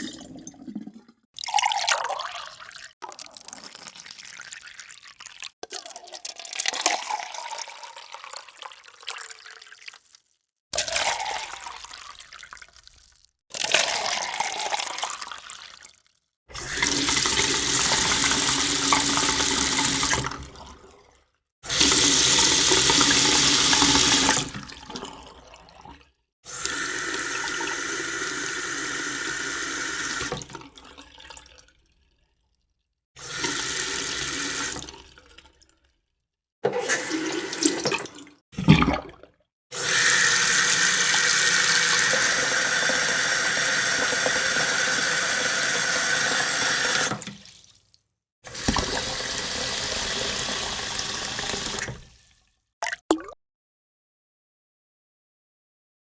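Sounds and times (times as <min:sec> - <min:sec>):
tap water running into sink: 0:16.6 - 0:20.6, 0:21.7 - 0:25.0, 0:26.6 - 0:30.6, 0:39.9 - 0:47.5, 0:48.5 - 0:52.1.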